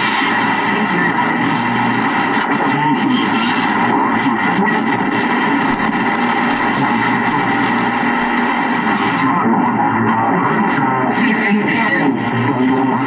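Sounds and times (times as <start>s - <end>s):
radio static and band noise: 0.0s - 13.0s.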